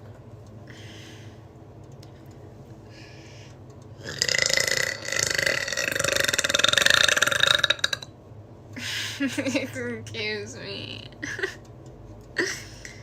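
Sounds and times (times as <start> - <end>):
loud drawn-out belch: 4.0 - 8.1.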